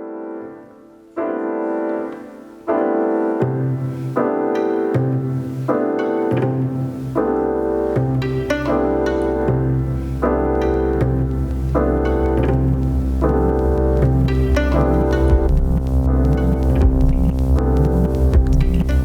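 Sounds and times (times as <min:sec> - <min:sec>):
piano chords: 0:00.0 - 0:19.0
low bass line: 0:08.0 - 0:19.0.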